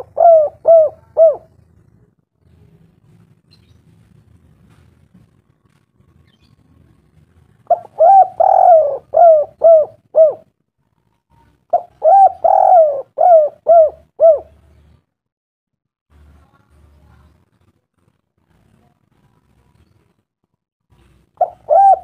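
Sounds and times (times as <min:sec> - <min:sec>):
bird calling: 0:00.0 - 0:01.6, 0:07.7 - 0:10.4, 0:11.7 - 0:14.6, 0:21.4 - 0:22.0.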